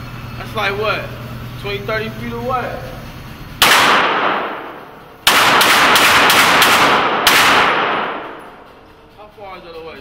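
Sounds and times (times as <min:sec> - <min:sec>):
echoing handgun shots: 0:03.6 - 0:08.7.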